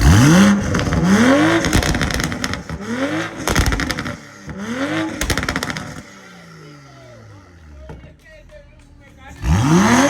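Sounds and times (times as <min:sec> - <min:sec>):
exhaust crackling pops: 0:00.0 - 0:06.0
car engine revving: 0:00.0 - 0:10.0.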